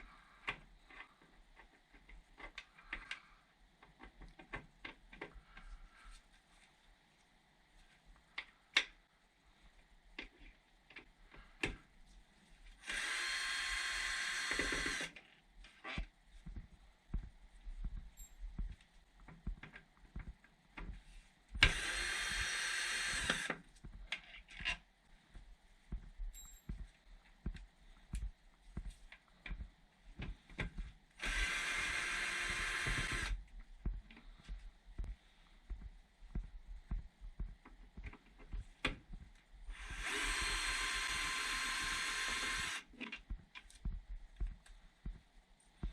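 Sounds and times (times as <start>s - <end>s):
power drill running: 12.8s - 15.1s, 21.6s - 23.6s, 31.2s - 33.4s, 39.7s - 42.8s.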